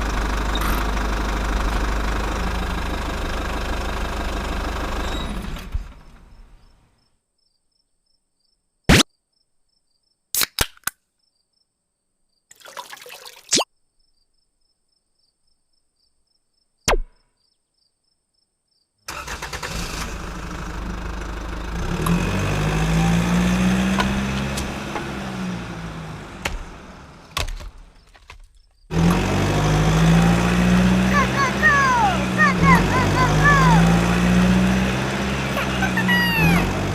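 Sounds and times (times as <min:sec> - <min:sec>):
vehicle engine running: 0:00.0 - 0:06.8, 0:19.1 - 0:36.9.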